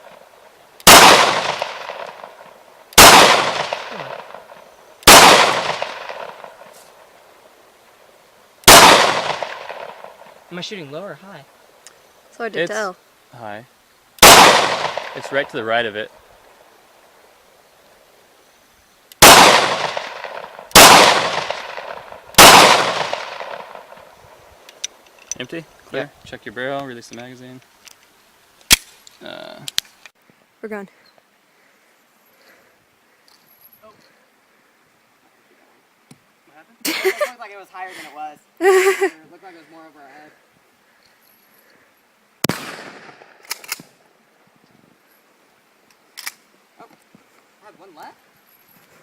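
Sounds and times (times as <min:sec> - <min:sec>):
gunshots: 0:00.8 - 0:02.4, 0:03.0 - 0:04.4, 0:05.0 - 0:06.5, 0:08.6 - 0:10.1, 0:14.2 - 0:15.5, 0:19.2 - 0:24.0, 0:42.4 - 0:43.6.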